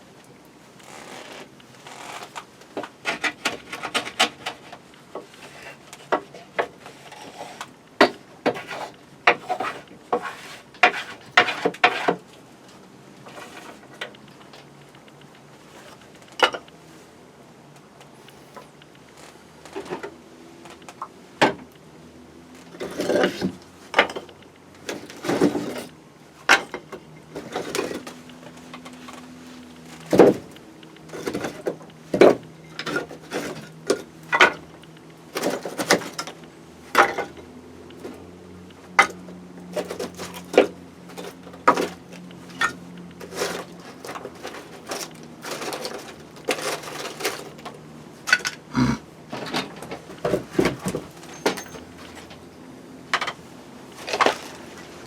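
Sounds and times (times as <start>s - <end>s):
hard objects knocking and clattering: 49.3s - 52.3s.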